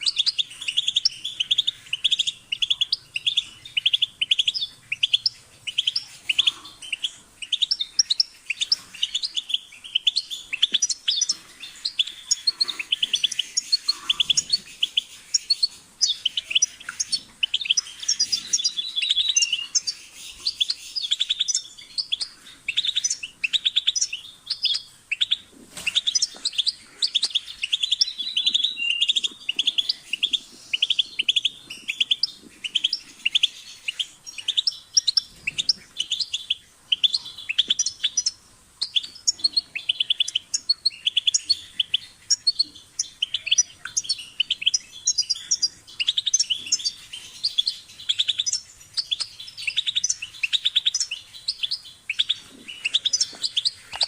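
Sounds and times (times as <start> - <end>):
bird twittering and trilling: 0.0 - 54.0.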